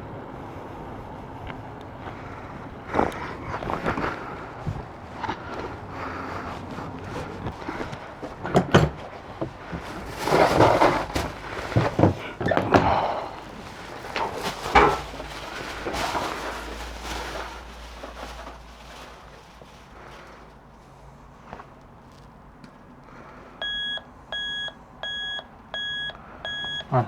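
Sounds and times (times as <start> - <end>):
bags rustling: 0.8 - 22.3.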